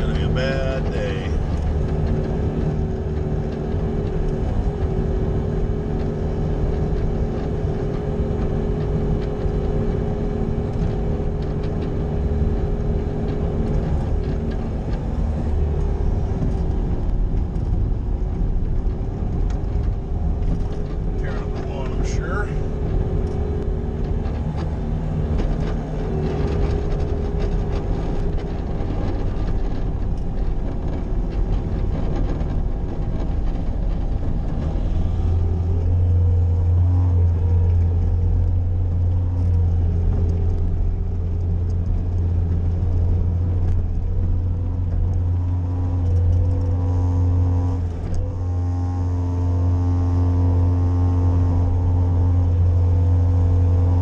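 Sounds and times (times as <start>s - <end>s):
loader engine running: 0.0s - 54.0s.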